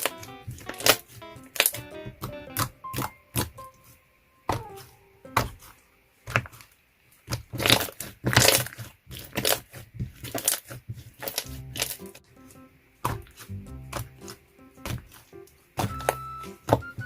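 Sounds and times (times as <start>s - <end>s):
slime crackling pops: 0.0s - 3.6s
slime squished by hand: 4.5s - 12.2s.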